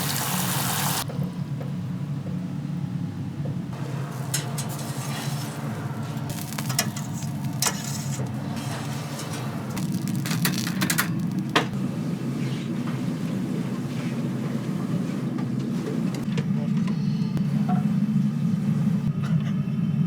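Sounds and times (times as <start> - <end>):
food sizzling: 0.0 - 1.0, 4.7 - 11.8.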